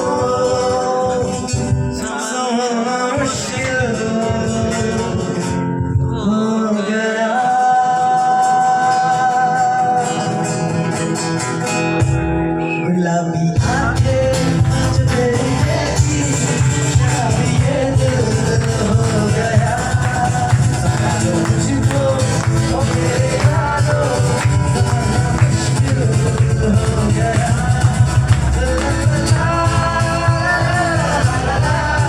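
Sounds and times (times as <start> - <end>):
guitar accompaniment: 0.0 - 32.0
person singing long notes: 2.0 - 10.4.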